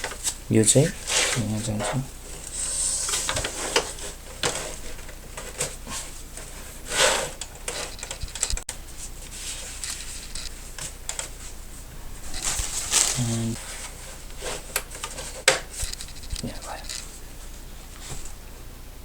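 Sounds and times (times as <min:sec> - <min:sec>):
cables and plastic parts clicking: 0:07.3 - 0:08.7, 0:09.8 - 0:11.3, 0:14.6 - 0:17.1
rustling swish: 0:11.4 - 0:14.7.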